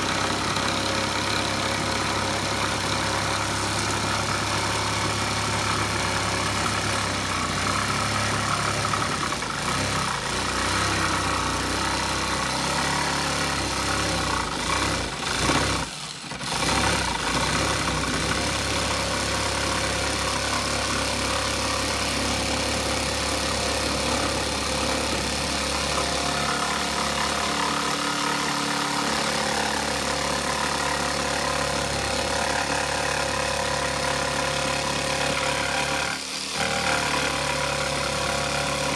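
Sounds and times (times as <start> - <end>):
electric sander on wood: 0.0 - 38.9.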